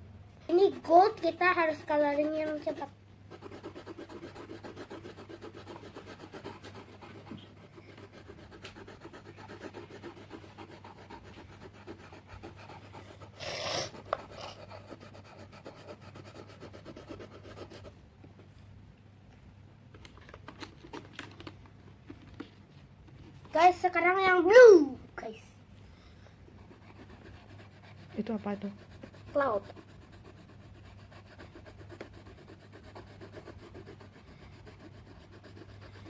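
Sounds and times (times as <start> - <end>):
pencil scribbling on paper: 0.5 - 17.9, 26.6 - 36.0
short breathy burst: 13.4 - 14.0.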